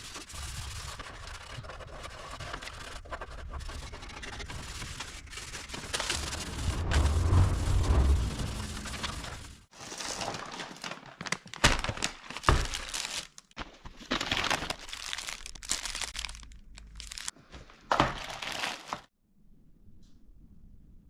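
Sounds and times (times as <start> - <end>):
hand sanding scratchy strokes: 0.0 - 9.6.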